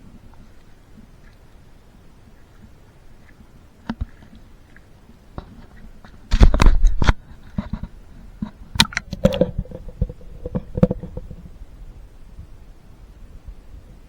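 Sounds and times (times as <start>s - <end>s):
knocks and scrapes on camera housing: 5.4s - 11.4s
rumbling handling bump: 5.4s - 12.6s.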